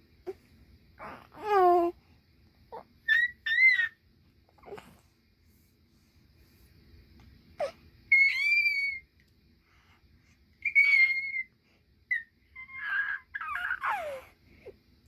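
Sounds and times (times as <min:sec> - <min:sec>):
baby squealing: 0:03.1 - 0:04.0, 0:08.1 - 0:09.0, 0:10.6 - 0:11.5, 0:12.1 - 0:14.2.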